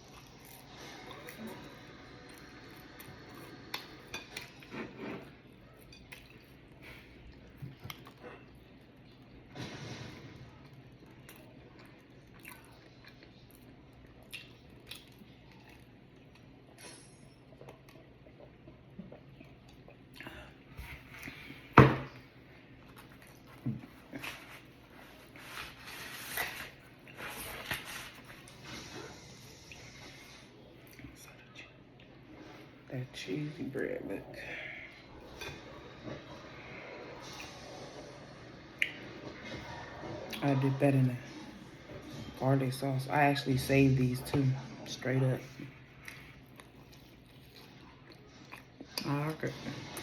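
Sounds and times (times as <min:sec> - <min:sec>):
person chewing: 0:05.7 - 0:09.4, 0:11.0 - 0:20.5, 0:45.8 - 0:49.0.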